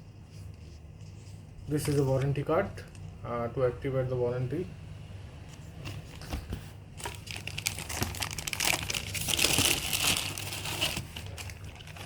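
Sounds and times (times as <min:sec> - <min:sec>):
packaging crinkling and rustling: 0:05.9 - 0:12.0.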